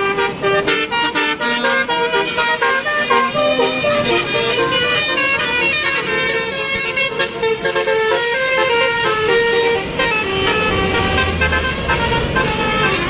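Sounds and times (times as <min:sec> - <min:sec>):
multi-tone bus horn tune: 0:00.0 - 0:13.0.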